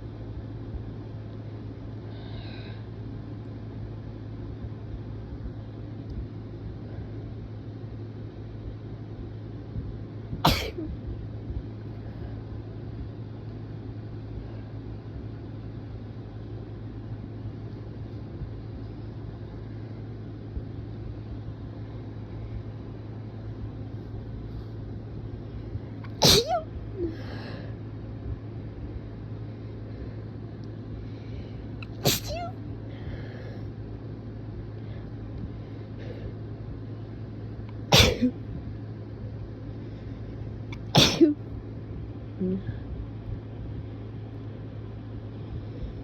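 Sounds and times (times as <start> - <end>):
person sneezing: 10.5 - 10.9, 26.1 - 27.1, 31.8 - 32.5, 37.9 - 38.4, 40.8 - 41.4.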